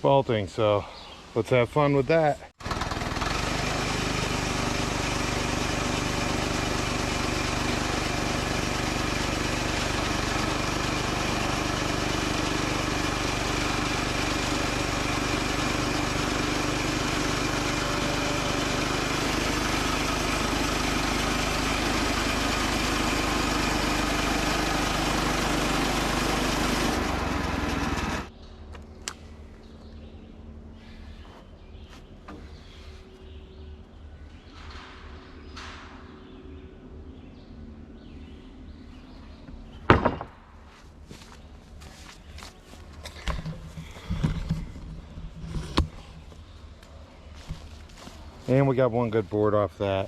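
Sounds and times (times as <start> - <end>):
sawmill gas engine running: 2.2 - 28.3, 41.1 - 50.0.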